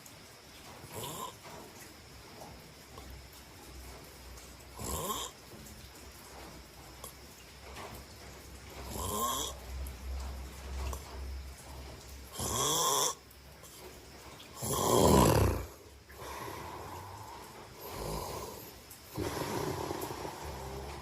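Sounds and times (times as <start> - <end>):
person snoring: 14.6 - 21.0.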